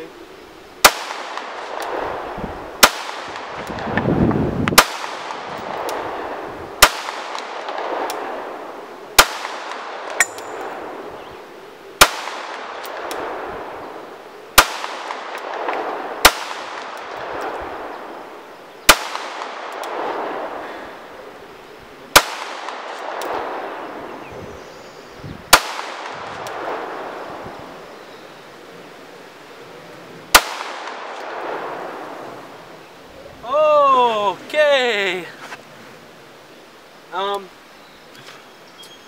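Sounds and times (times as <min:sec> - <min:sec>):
pistol shots with rolling echo: 0:00.8 - 0:03.9, 0:04.8 - 0:11.1, 0:12.0 - 0:13.8, 0:14.6 - 0:18.1, 0:18.8 - 0:20.6, 0:22.1 - 0:24.1, 0:25.5 - 0:27.4, 0:30.3 - 0:32.3.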